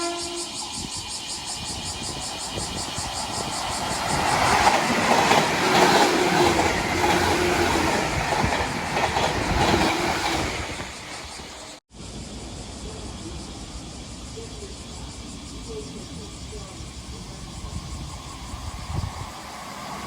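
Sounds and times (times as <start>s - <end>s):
train wheels clacking over rail joints: 2.1s - 11.0s.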